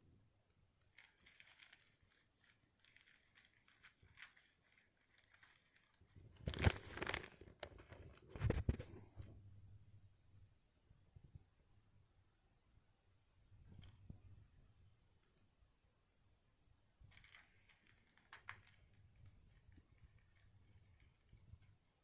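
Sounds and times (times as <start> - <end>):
plastic crinkling and rustling: 0.8 - 9.3, 17.0 - 22.0.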